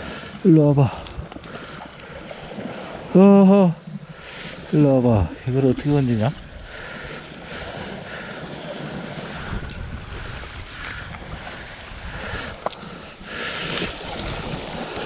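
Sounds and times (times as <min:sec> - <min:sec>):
sea water washing against rocks: 0:00.0 - 0:15.0
wind buffeting microphone: 0:04.6 - 0:15.0.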